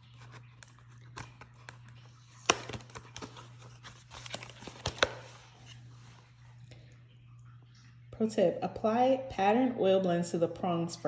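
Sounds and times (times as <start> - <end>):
box and packaging being handled: 0.0 - 6.4.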